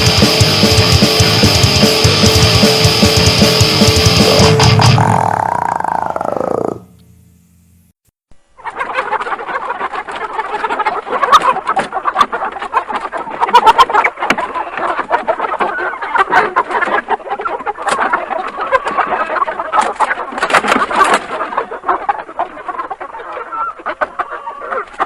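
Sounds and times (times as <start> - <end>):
animal-like squawks and clucks: 4.2 - 6.9, 8.6 - 25.0.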